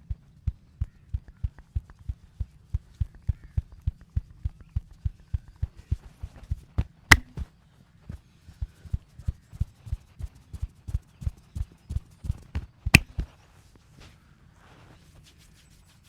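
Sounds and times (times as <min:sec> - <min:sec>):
sharp loud clicks: 0:07.1 - 0:07.3
massage gun thumping on body: 0:07.1 - 0:07.4.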